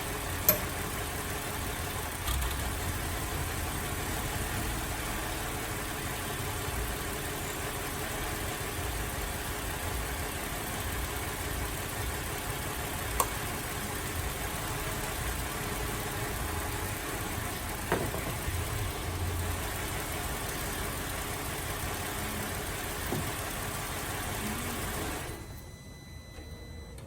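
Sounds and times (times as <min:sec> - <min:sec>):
car engine idling with misfire: 0:00.0 - 0:25.7.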